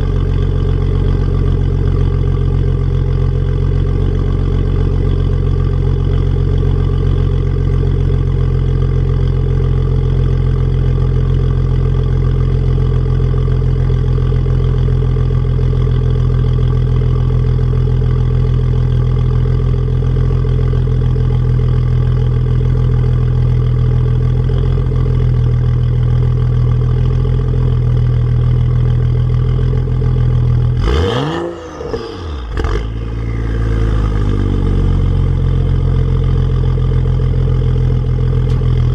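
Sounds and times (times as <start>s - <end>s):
car engine idling: 0.0s - 38.9s
engine revving: 30.7s - 36.3s.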